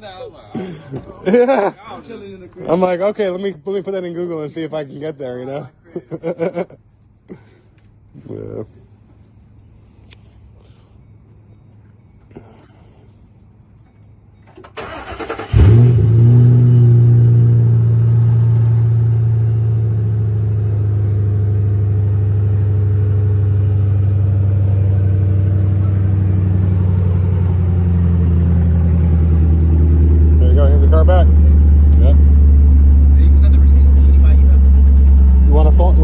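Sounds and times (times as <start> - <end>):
car engine starting and idling: 14.4 - 36.0.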